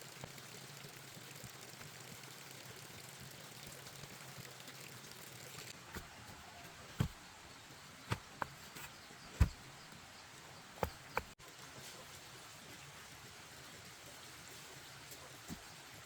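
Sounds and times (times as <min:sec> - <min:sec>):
short knocks and thumps: 0:05.9 - 0:07.2, 0:08.0 - 0:10.1, 0:10.7 - 0:11.4.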